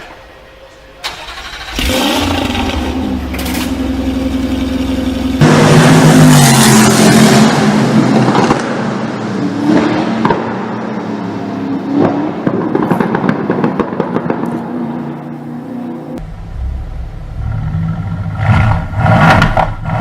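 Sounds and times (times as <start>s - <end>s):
car engine at high revs: 1.7s - 20.0s
exhaust crackling and popping: 8.1s - 8.8s, 12.0s - 14.7s, 16.2s - 20.0s.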